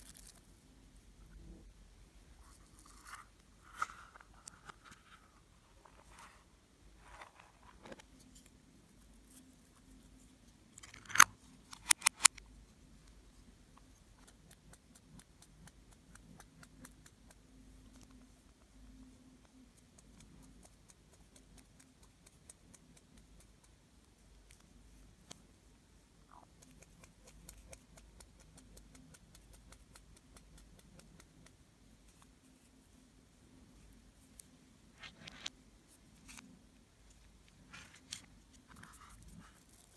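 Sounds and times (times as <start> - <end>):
sharp clicks: 11.0 - 12.4.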